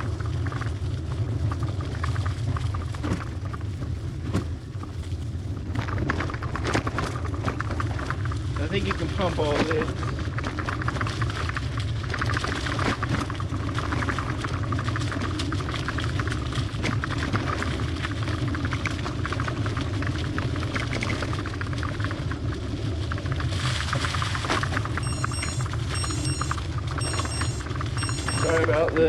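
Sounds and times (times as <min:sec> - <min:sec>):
bicycle rolling over dirt trail: 0:00.0 - 0:25.1
bike rattling and clicking: 0:01.5 - 0:08.3.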